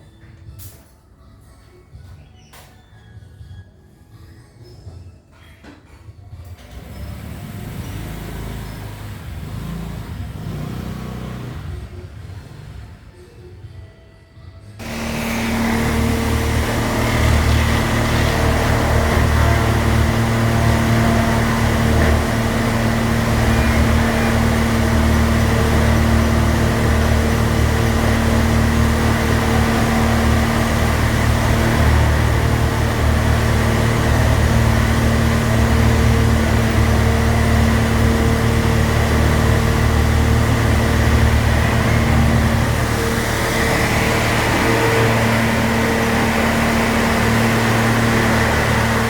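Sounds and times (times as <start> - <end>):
electric motor humming: 14.8 - 49.0.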